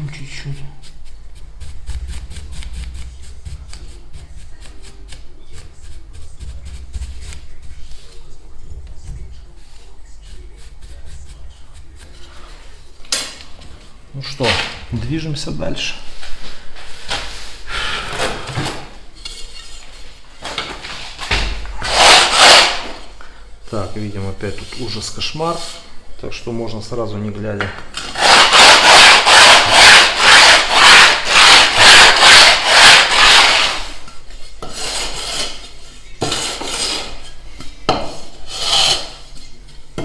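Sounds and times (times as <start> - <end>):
scratchy paintbrush strokes: 0.0 - 13.0, 23.7 - 25.9
tile edge scraping: 14.2 - 14.9, 16.0 - 23.1, 27.9 - 39.6.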